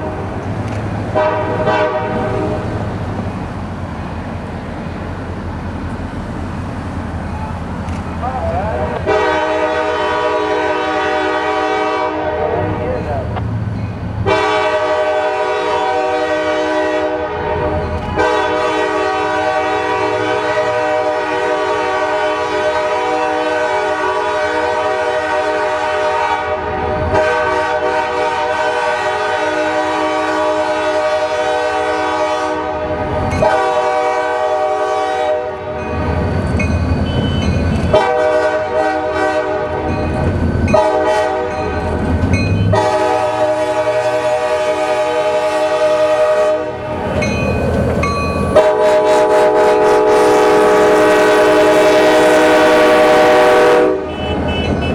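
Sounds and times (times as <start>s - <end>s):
locomotive and rail rumble: 0.0s - 54.9s
locomotive air horn blasts: 1.1s - 2.8s, 9.0s - 12.8s, 14.2s - 35.8s, 37.1s - 39.9s, 40.8s - 41.7s, 42.6s - 46.9s, 48.5s - 54.9s.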